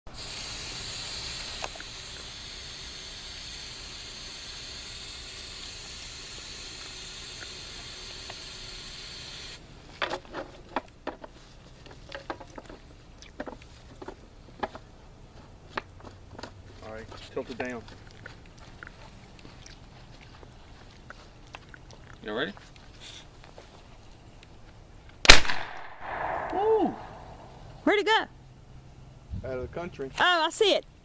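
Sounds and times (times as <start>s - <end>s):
aerosol spray hissing: 0.1s - 9.6s.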